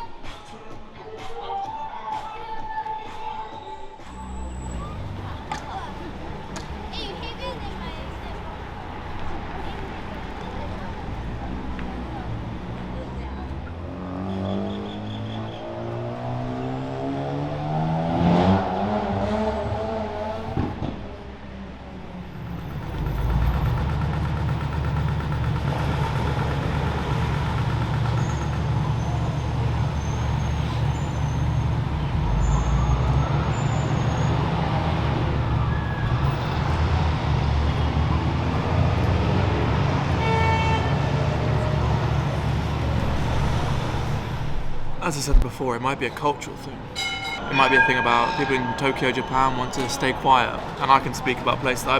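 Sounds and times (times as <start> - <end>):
low traffic rumble: 4.0 - 51.9
vehicle engine accelerating: 4.1 - 45.4
brief high-pitched tone: 46.9 - 50.2.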